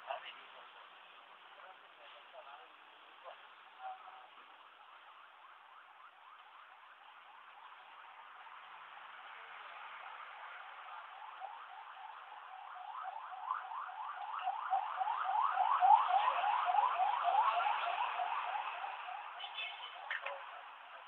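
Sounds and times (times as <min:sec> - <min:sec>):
siren yelping: 0:10.6 - 0:21.0.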